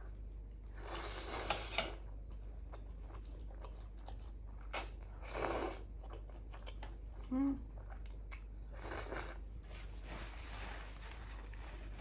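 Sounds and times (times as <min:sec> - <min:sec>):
person chewing and biting food: 0:02.2 - 0:05.2, 0:05.8 - 0:09.1.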